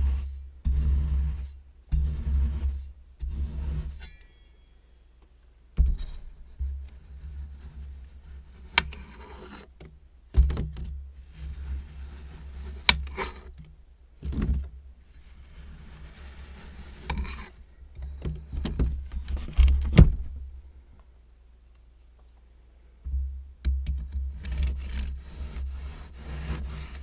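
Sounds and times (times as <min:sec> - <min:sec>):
soft scraping of sand: 0:11.3 - 0:13.4, 0:15.1 - 0:17.6, 0:24.6 - 0:27.0.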